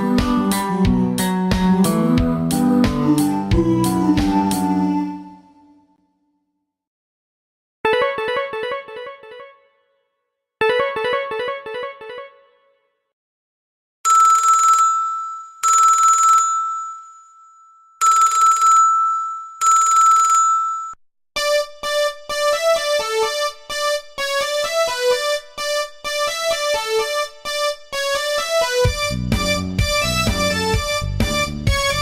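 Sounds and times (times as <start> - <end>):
bouncy piano-like ringtone melody: 7.8 - 10.0, 10.6 - 12.9, 14.1 - 23.2
trilling telephone ringtone: 14.1 - 21.0.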